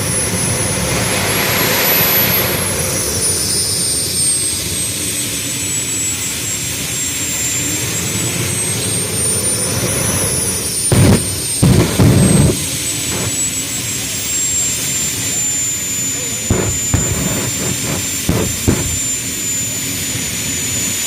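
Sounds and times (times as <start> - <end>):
jet engine whining: 0.0 - 21.0
jet exhaust flame blasts: 9.6 - 21.0.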